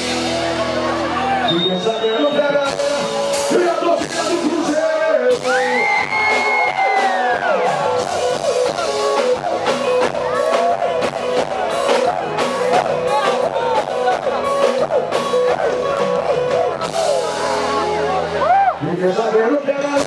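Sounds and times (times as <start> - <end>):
band music: 0.0 - 20.0
guitar: 0.0 - 20.0
steady drum beat: 2.4 - 17.7.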